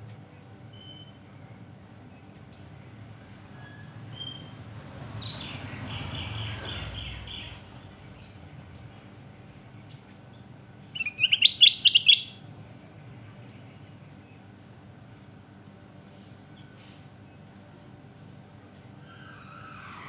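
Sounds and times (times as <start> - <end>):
bird calling: 11.0 - 12.4.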